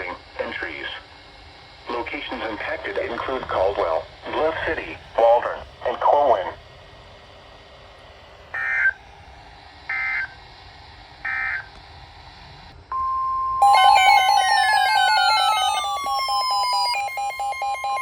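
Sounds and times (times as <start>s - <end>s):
pulsing electronic alarm: 8.5s - 9.0s, 9.9s - 10.4s, 11.2s - 11.8s, 13.6s - 18.0s
steady warning alarm tone: 8.5s - 9.0s, 9.9s - 10.4s, 11.2s - 11.8s, 13.0s - 18.0s
warbling data bursts: 13.6s - 18.0s.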